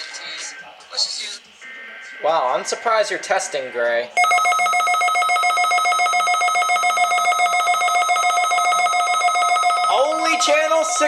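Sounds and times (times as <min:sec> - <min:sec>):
pulsing electronic alert tone: 0:04.2 - 0:11.0.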